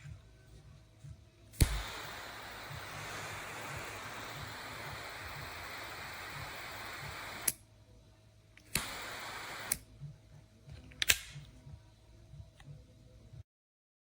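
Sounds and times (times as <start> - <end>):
lighter gas hiss: 1.5 - 7.6, 8.6 - 9.8
lighter clicks: 1.6 - 7.6, 8.6 - 9.8, 11.0 - 11.5.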